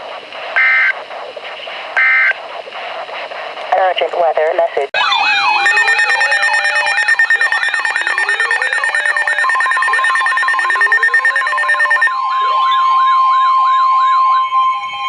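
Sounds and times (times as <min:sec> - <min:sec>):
stepped beeping tones: 0:05.0 - 0:14.8
siren-like wailing alert tones: 0:05.0 - 0:15.0.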